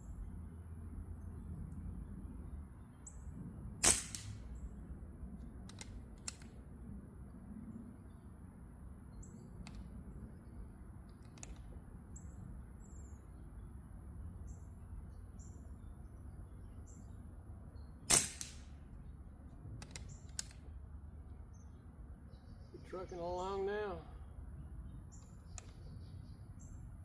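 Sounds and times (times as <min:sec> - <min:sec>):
airgun shot: 0:03.8 - 0:04.5, 0:18.1 - 0:18.8.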